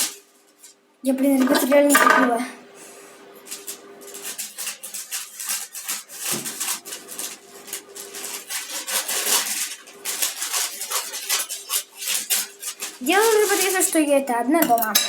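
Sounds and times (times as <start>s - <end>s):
kitchen things rustling and scraping: 0.0s - 15.0s
microwave oven humming: 0.0s - 15.0s.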